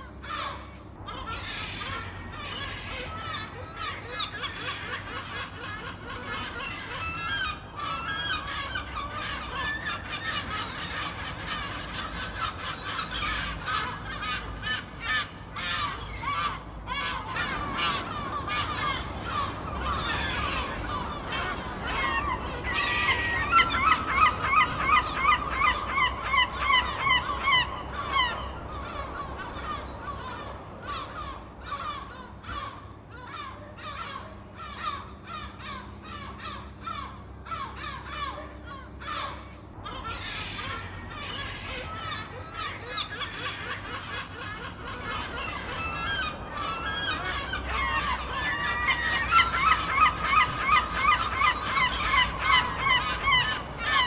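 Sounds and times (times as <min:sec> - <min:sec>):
gulls squawking: 0:00.0 - 0:54.0.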